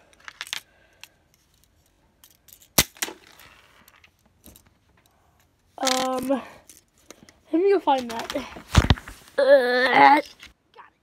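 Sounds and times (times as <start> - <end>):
plastic bricks clicking and knocking: 5.8 - 6.9.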